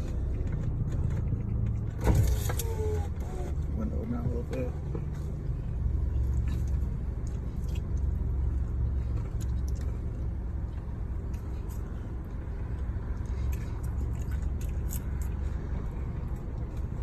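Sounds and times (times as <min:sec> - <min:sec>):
car cabin rumble: 0:00.0 - 0:17.0
person chewing food: 0:05.3 - 0:17.0.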